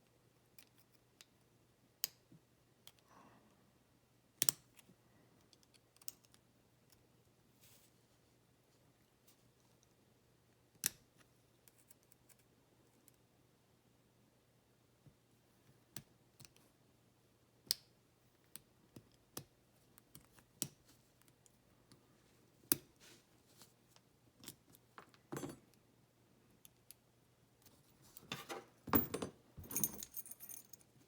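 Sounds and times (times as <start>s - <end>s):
small metal parts clattering: 28.3s - 30.9s.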